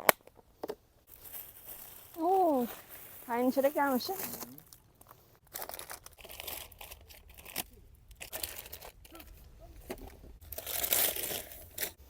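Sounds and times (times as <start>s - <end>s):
food packaging crinkling: 1.1s - 12.0s.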